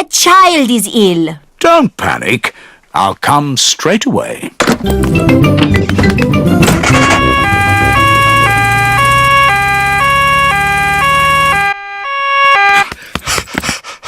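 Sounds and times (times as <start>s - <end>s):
two-tone cartoon siren: 6.6s - 12.9s.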